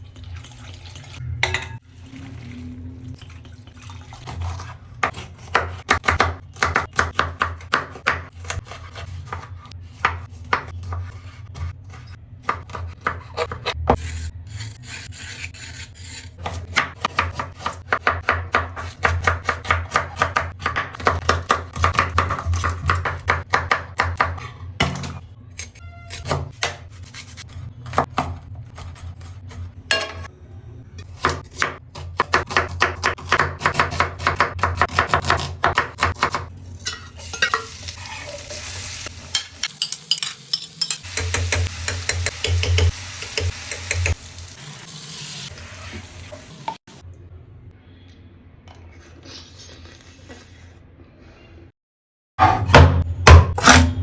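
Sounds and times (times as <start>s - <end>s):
knife chopping on cutting board: 31.2s - 36.4s.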